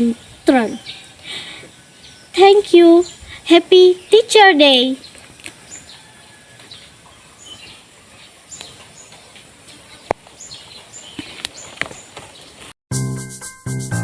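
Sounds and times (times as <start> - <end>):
low background hiss: 0.0 - 6.1
birds chirping: 0.0 - 12.7.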